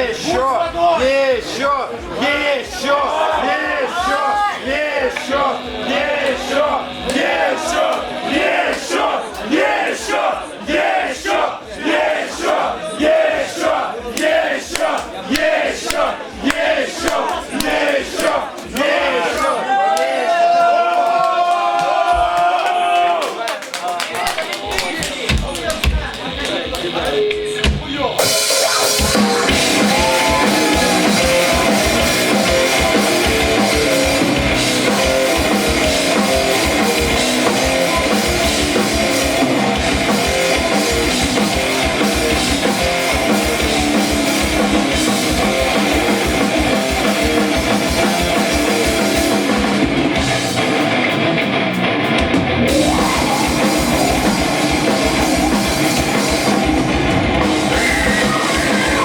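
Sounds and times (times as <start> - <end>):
pounding drum kit: 0.0 - 11.2, 24.3 - 59.0
live heavy rock band: 25.3 - 59.0.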